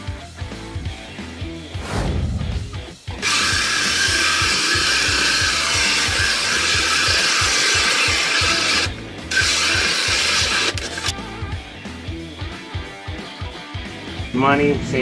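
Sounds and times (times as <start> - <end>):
power drill with hole saw cutting: 3.2 - 11.2.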